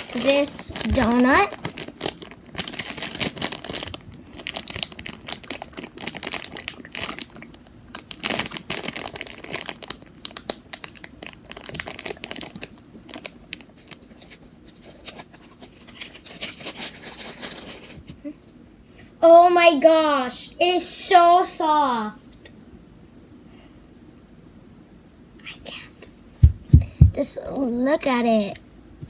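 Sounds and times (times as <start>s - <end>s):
plastic packaging crinkling and tearing: 0.0s - 18.0s.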